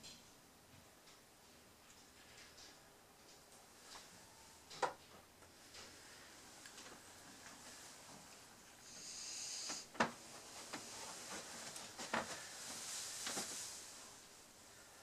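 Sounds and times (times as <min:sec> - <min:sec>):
short hiss: 0:08.8 - 0:09.9.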